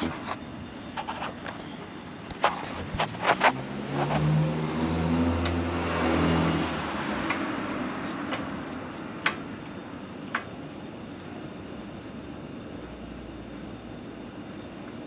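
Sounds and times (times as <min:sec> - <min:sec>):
passing vehicle engine hum: 0:02.4 - 0:09.2.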